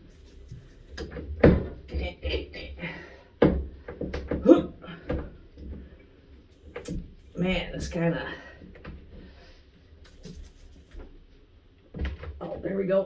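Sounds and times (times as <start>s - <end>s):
person muttering and grunting: 4.4s - 5.1s.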